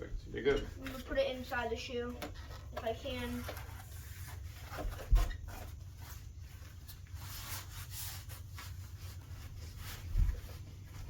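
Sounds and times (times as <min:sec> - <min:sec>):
plastic parts rubbing and scraping: 0:00.5 - 0:11.0.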